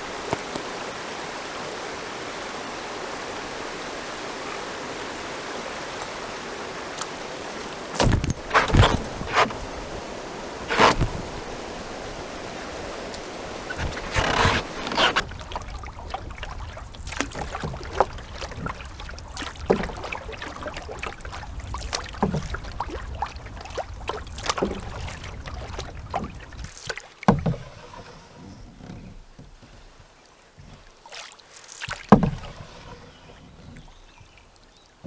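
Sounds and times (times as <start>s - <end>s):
paddle splashes and drips: 0.0s - 35.0s
sharp knocks: 8.0s - 9.6s, 10.6s - 11.3s.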